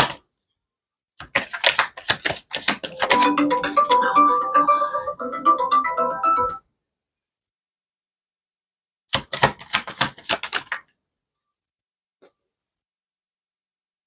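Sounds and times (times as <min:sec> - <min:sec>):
soft keyboard music: 0:02.9 - 0:06.7.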